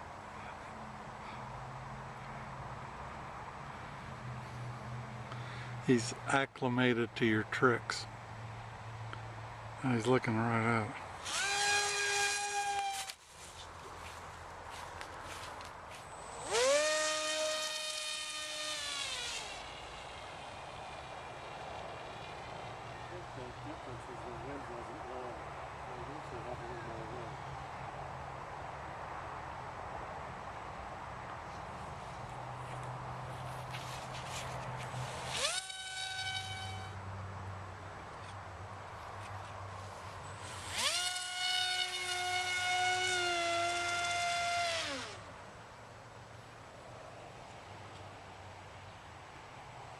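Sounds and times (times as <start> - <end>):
electric motor whine: 11.2 - 13.2, 15.3 - 23.1, 34.4 - 37.0, 40.4 - 45.2.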